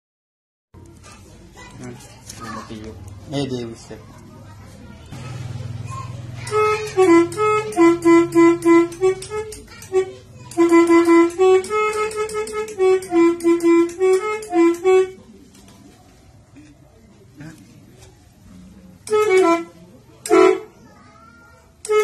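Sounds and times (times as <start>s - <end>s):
air horn melody: 6.5s - 15.2s, 19.0s - 20.7s.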